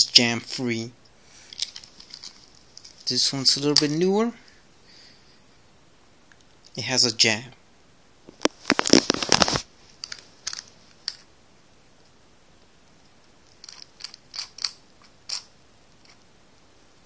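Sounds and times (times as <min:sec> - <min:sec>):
padlock metal clicks and rattles: 0:10.0 - 0:11.3, 0:13.6 - 0:15.5.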